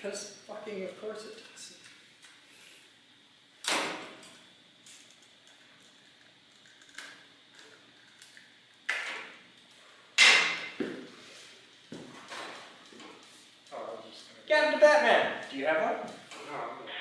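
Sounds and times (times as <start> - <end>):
sharp knocks: 10.2 - 11.1.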